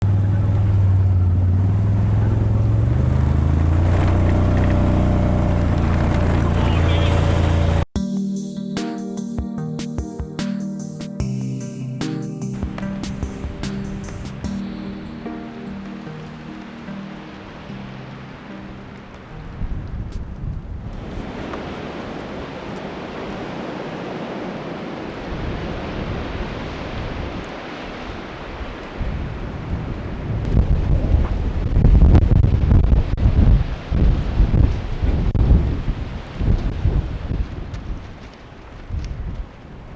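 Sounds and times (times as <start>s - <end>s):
engine running: 0.0s - 7.9s
blizzard wind rushing: 12.5s - 39.9s
wind buffeting microphone: 19.1s - 39.9s.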